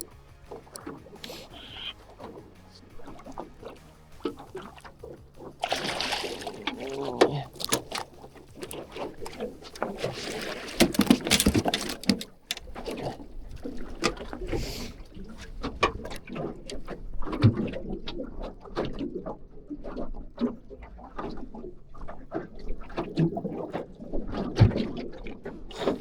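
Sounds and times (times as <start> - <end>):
knocks and clatter of fishing gear: 0.0 - 17.7.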